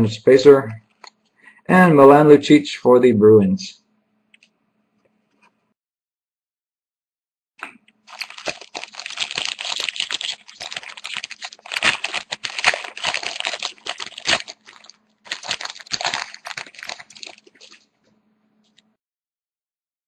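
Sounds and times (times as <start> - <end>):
foil wrapper crinkling and tearing: 8.0 - 17.9.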